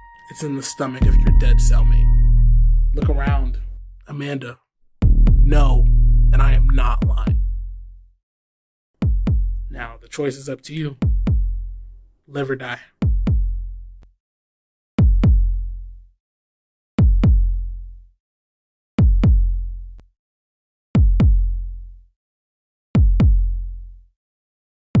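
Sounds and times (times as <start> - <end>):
deep electronic kick drum thumps: 1.0 - 3.8, 5.0 - 7.8, 9.0 - 9.8, 11.0 - 11.7, 13.0 - 13.8, 15.0 - 15.8, 17.0 - 17.8, 19.0 - 19.8, 21.0 - 21.7, 23.0 - 23.7.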